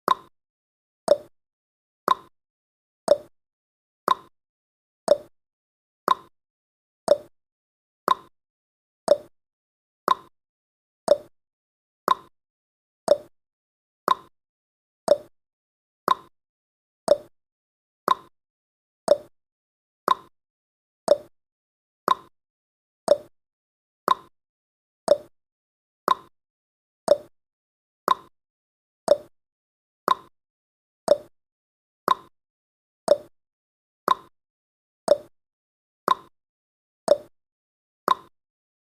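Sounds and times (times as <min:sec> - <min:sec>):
clock ticking: 0:01.1 - 0:01.3, 0:03.1 - 0:03.3, 0:05.1 - 0:05.3, 0:07.1 - 0:07.3, 0:09.1 - 0:09.3, 0:11.1 - 0:11.3, 0:13.1 - 0:13.3, 0:15.1 - 0:15.3, 0:19.1 - 0:19.3, 0:21.1 - 0:21.3, 0:29.1 - 0:29.3, 0:31.1 - 0:31.3, 0:33.1 - 0:33.3, 0:35.1 - 0:35.3, 0:37.1 - 0:37.3.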